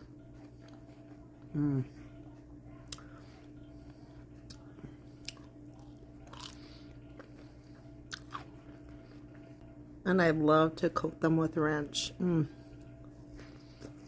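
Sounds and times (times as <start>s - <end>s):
close-up chewing of fried food: 0.0s - 9.9s, 12.7s - 14.0s.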